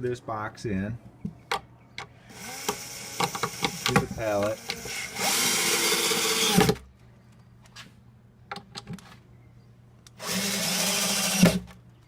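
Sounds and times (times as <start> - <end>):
power drill driving screws into wood: 2.3 - 6.8, 10.2 - 11.7.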